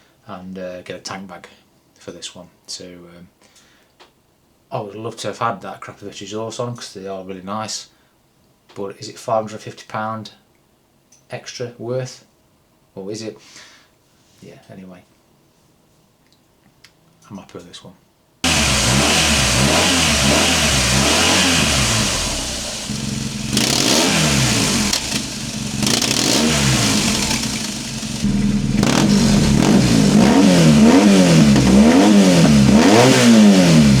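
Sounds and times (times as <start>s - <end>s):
motorcycle engine revving in blips: 18.4s - 34.0s.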